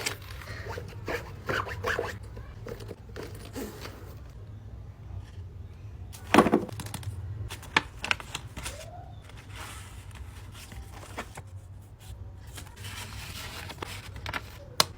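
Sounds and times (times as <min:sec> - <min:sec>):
bag packaging rustling: 0:00.0 - 0:04.4.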